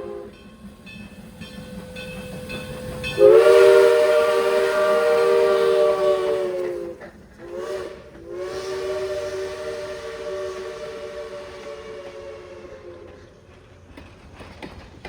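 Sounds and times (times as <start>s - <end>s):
steam locomotive chime whistle: 0.0s - 13.5s.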